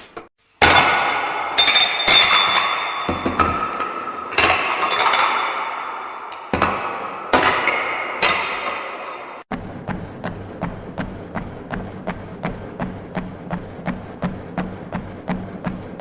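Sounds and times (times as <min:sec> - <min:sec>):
heavy metallic strikes ringing: 0:00.6 - 0:09.4.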